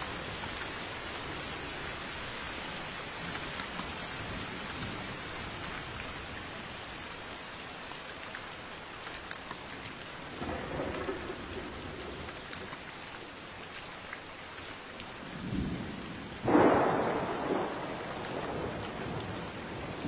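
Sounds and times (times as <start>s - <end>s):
steady rain: 0.0s - 20.0s
raindrop ticks: 3.2s - 6.5s, 7.2s - 20.0s
low rumble of thunder: 10.3s - 12.7s, 15.2s - 20.0s.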